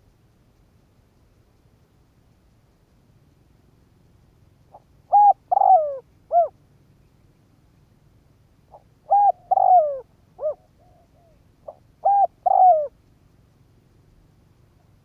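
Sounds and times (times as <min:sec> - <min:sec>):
dove cooing: 0:04.7 - 0:06.6, 0:08.7 - 0:13.0.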